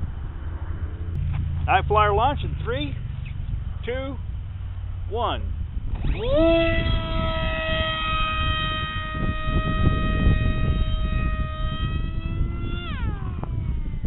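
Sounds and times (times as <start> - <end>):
low rumbling noise: 0.0 - 14.0
electric motor propeller whine: 5.8 - 14.0.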